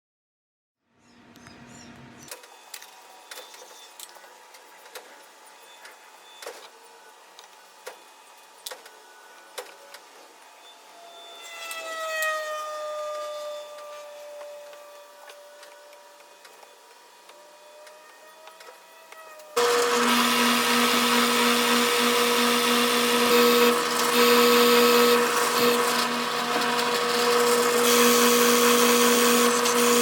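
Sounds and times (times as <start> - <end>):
motor whine sliding down in pitch: 10.5 - 30.0
power tool motor running: 12.7 - 30.0.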